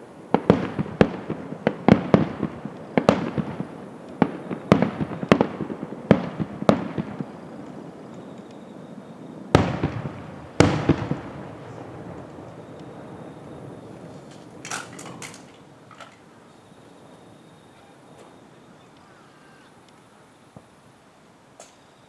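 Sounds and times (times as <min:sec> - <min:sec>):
firework cracks and crackle: 0:00.0 - 0:16.4
fireworks bursting with loud bangs: 0:00.0 - 0:18.5
rumbling echo: 0:09.5 - 0:15.2.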